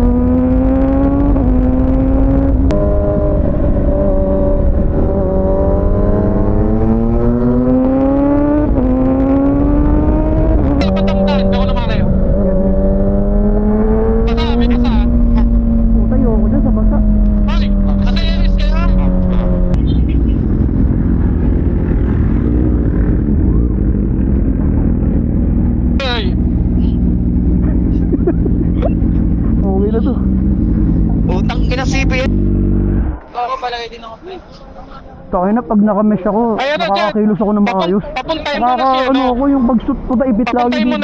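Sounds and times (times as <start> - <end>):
wind noise on microphone: 0.0 - 10.9
motorcycle engine accelerating: 0.0 - 33.3.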